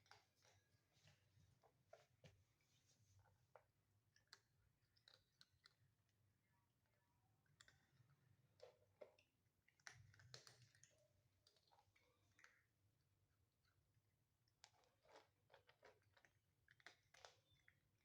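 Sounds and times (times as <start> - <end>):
cats crunching dry food: 4.2 - 6.0, 9.7 - 12.8, 14.5 - 18.0.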